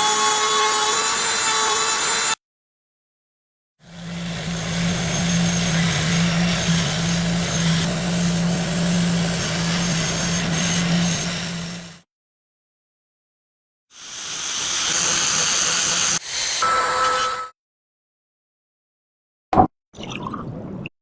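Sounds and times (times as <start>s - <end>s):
power tool motor humming: 3.9s - 12.0s, 14.0s - 17.5s.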